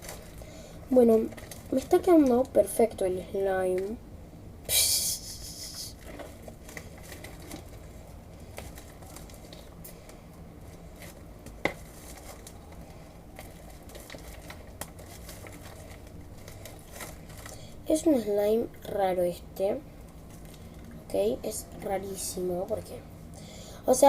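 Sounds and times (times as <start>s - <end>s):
slime being stirred crackling: 0.0s - 2.9s, 6.0s - 18.1s.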